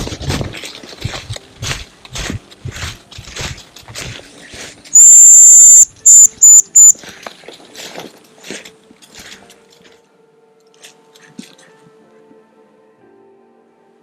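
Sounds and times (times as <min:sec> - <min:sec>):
decoy whistle: 0:05.0 - 0:07.0.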